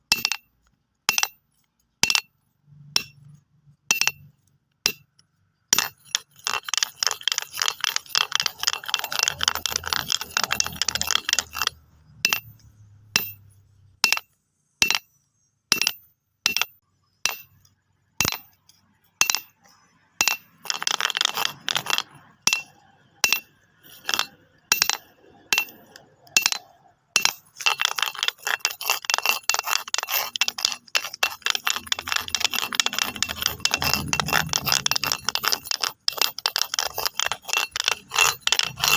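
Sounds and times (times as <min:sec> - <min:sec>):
stones clattering together: 0:05.7 - 0:12.5, 0:20.2 - 0:38.9.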